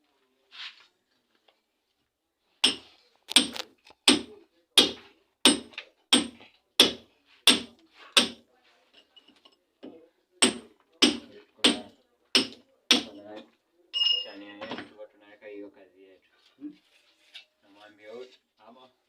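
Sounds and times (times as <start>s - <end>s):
hand hammer striking: 2.6s - 8.4s, 10.4s - 13.2s.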